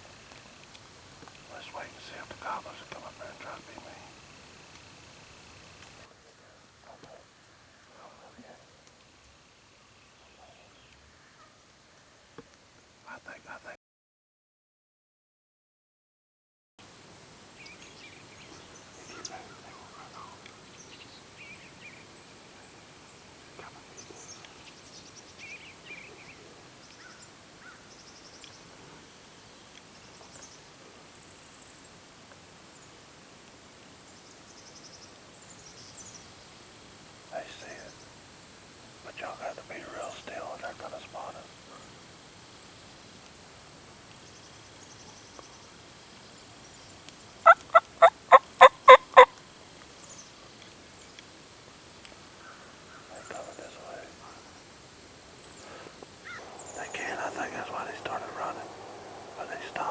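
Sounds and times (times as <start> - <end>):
faint steady hiss: 0.0 - 13.8, 16.8 - 59.9
wild birds calling: 1.4 - 12.3, 17.6 - 30.6, 46.4 - 49.4, 52.1 - 59.9
turkey yelping: 47.4 - 49.3
rapid high bird trills: 55.6 - 59.9.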